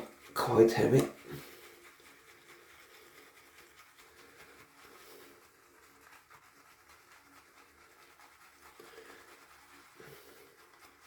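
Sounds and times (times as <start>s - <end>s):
shaving brush scratching in soap tub: 0.0s - 11.0s.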